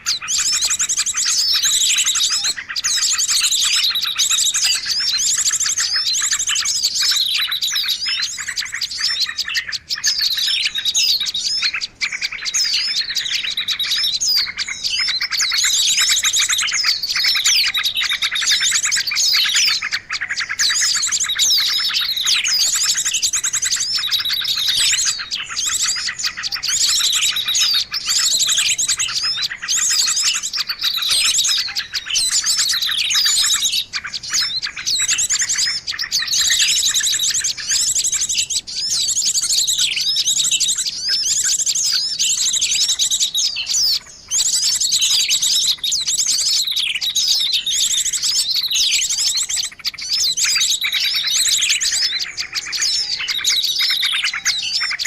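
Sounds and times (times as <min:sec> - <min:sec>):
small songbirds singing: 0:00.0 - 0:55.0.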